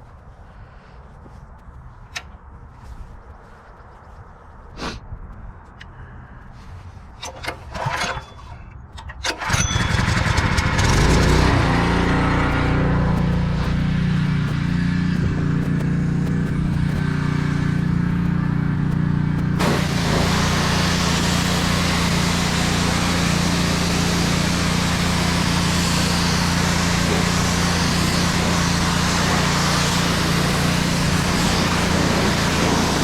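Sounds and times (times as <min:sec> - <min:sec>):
pressure washer motor hum: 0:09.3 - 0:33.0
high-pressure water jet hissing: 0:19.5 - 0:33.0.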